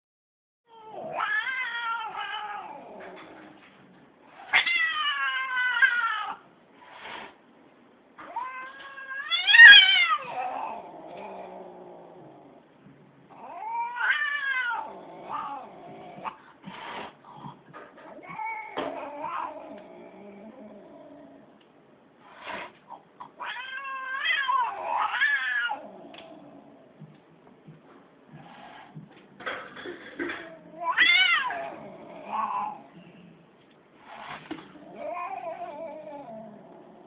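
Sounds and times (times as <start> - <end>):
cat meowing: 0.7 - 2.8, 8.2 - 10.7, 13.3 - 15.6, 23.3 - 26.3, 30.3 - 32.9.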